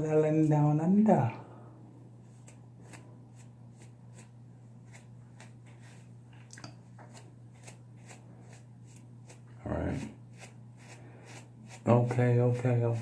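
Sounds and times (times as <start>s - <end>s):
brush swishing through beard: 2.2s - 6.3s, 6.9s - 13.0s.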